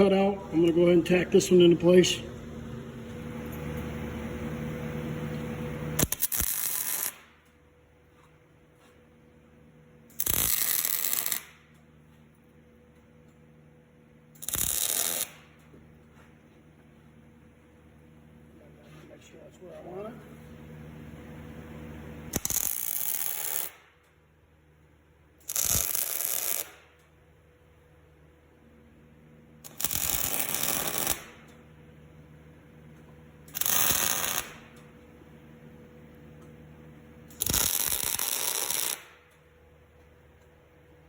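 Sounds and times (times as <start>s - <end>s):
welding arc crackle: 5.9s - 7.6s, 10.1s - 11.9s, 14.3s - 15.6s, 22.3s - 24.0s, 25.4s - 27.0s, 29.6s - 31.6s, 33.5s - 34.9s, 37.3s - 39.4s.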